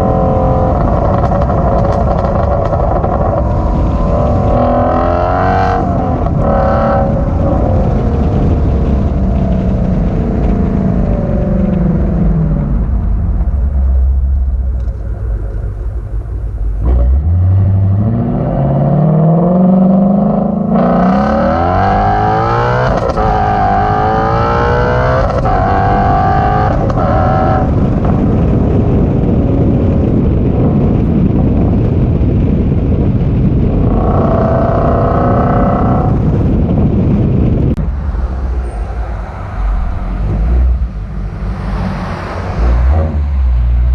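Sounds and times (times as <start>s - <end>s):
car engine revving and accelerating: 0.0s - 15.0s, 16.7s - 29.2s, 33.8s - 36.4s, 37.7s - 43.9s.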